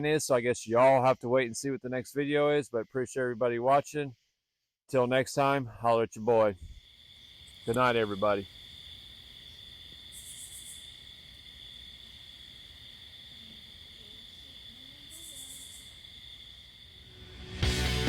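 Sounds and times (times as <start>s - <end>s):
insects buzzing trill: 6.6s - 17.6s.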